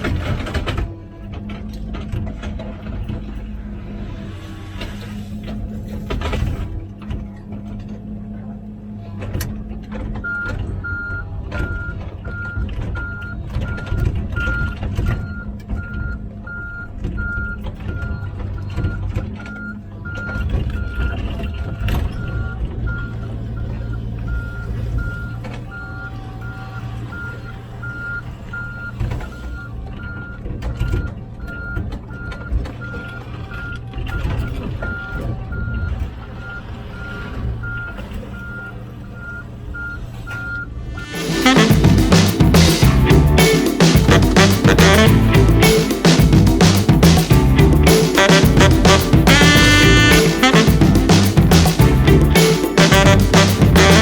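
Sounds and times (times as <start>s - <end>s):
reversing alarm beeping: 10.2s - 41.6s
diesel engine running: 40.8s - 52.4s.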